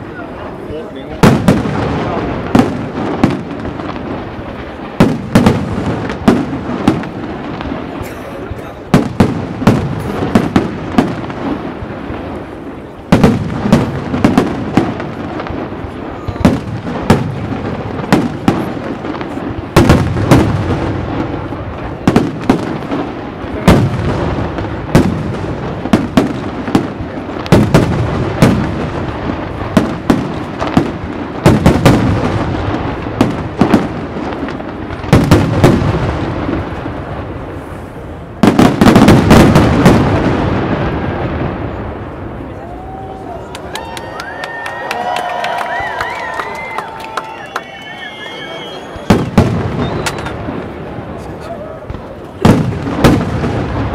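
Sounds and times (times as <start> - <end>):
crackling firework rumble: 0.0 - 53.9
firework shells bursting: 46.0 - 53.9.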